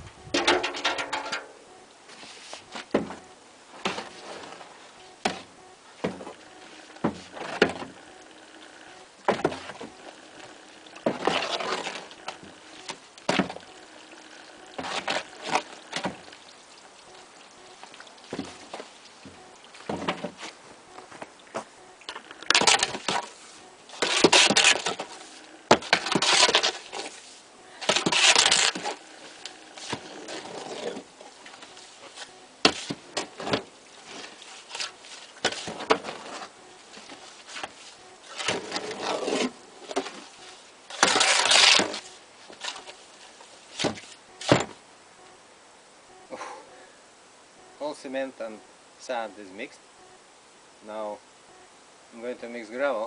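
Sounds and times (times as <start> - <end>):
gritty scraping of cement mixing: 3.7 - 16.4, 17.1 - 44.8.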